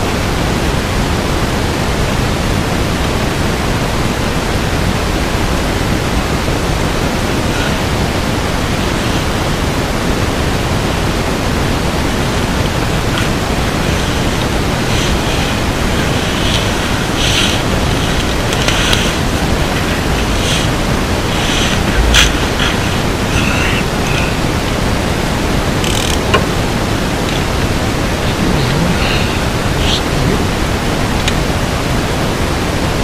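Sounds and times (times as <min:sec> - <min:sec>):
loud rushing hiss: 0:05.1 - 0:31.2.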